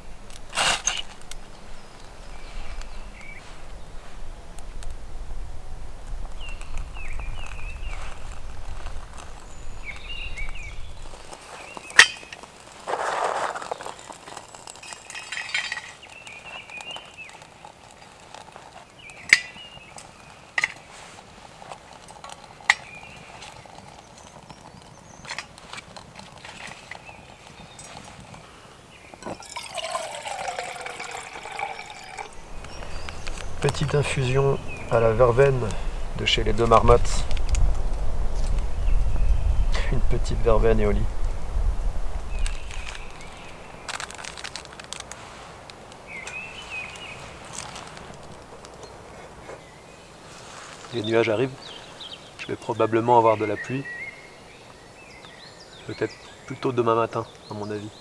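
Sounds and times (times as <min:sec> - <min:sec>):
liquid being poured: 0:29.2 - 0:35.0.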